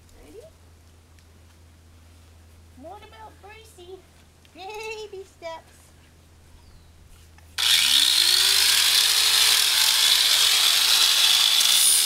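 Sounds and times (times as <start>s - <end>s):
angle grinder whining: 7.6s - 12.0s.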